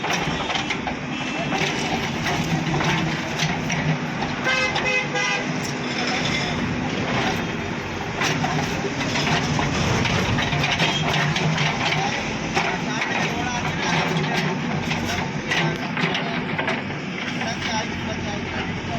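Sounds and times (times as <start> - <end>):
heavy diesel engine running: 0.0 - 18.9
vehicle horn toots: 4.4 - 5.6.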